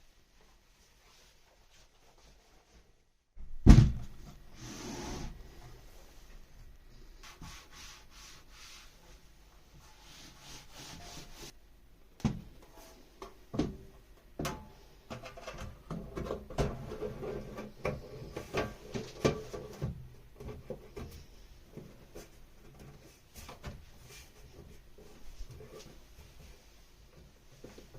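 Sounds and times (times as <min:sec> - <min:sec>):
light rubbing and scraping: 0:07.2 - 0:11.6.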